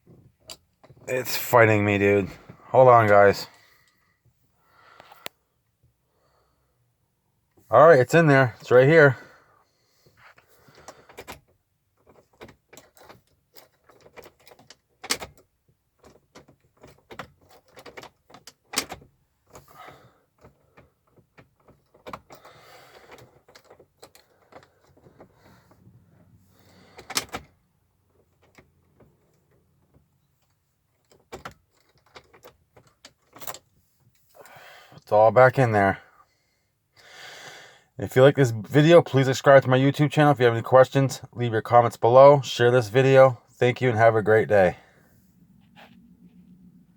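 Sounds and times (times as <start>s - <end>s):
clicks and light rattles of parts: 0.0s - 1.5s, 10.1s - 35.1s.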